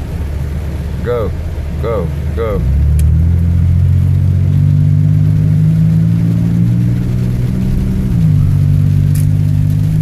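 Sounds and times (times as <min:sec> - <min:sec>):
car engine running under load: 0:00.0 - 0:10.0
tyres hissing on wet road: 0:05.1 - 0:10.0.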